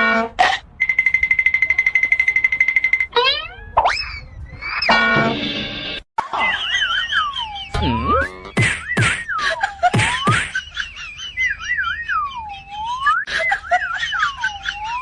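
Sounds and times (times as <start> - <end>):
whistled comic tune: 6.8 - 10.6, 11.2 - 15.0.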